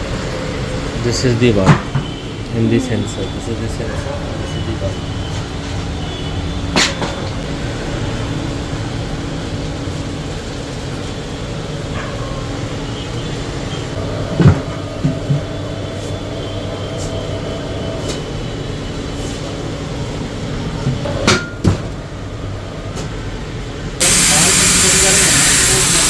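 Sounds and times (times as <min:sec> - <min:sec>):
tyre-changing machine humming: 0:24.0 - 0:26.0.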